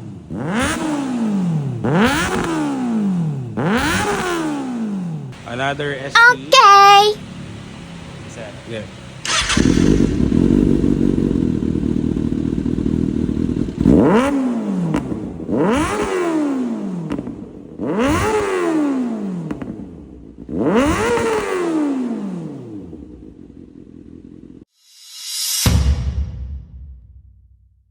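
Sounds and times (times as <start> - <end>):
motorcycle engine revving: 8.9 - 24.6.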